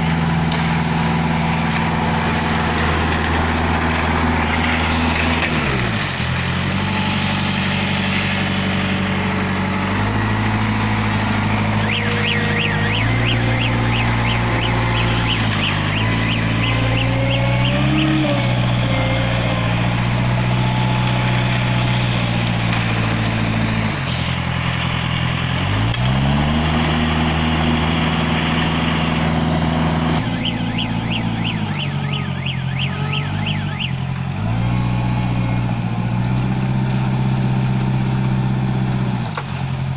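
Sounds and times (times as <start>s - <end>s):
concrete mixer engine running: 0.0s - 39.9s
rapid high beeps: 11.8s - 18.2s, 30.4s - 34.0s.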